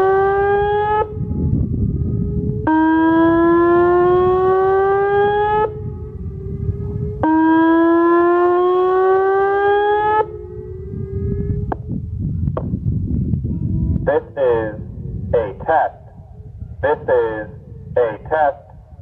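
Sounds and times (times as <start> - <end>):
warning siren rising tone: 0.0 - 18.5
faint held siren tone: 0.0 - 18.9.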